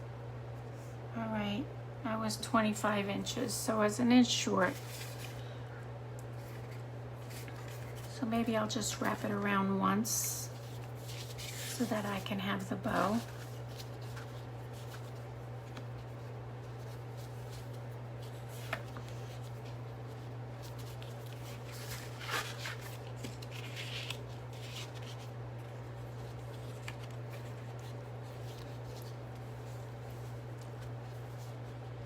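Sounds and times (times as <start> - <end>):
steady low hum: 0.0 - 32.0
ribbon and paper rustling: 4.4 - 5.5, 6.3 - 32.0.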